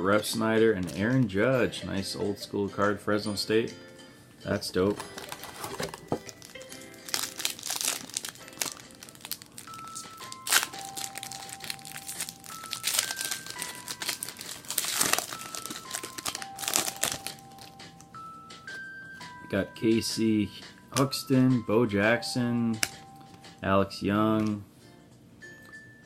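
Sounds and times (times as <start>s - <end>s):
faint background music: 0.0s - 26.0s
wrapper tearing and crinkling: 4.9s - 17.7s.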